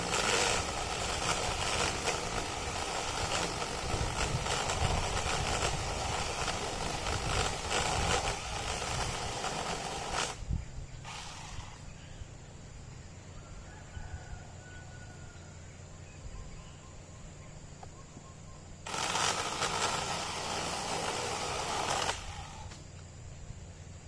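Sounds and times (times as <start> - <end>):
cordless chainsaw running: 0.0 - 10.4, 11.0 - 11.9, 18.8 - 22.9.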